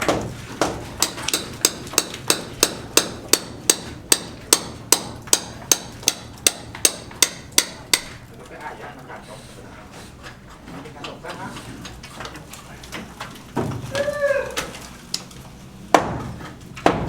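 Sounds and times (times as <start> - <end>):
hand hammer striking: 0.0 - 8.2, 15.9 - 17.0.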